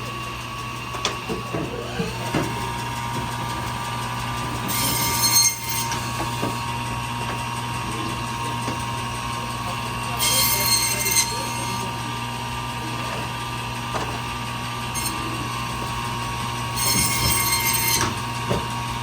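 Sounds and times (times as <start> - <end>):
band saw running: 0.0 - 19.0
saw rasping through fish: 10.0 - 12.1, 16.7 - 18.3.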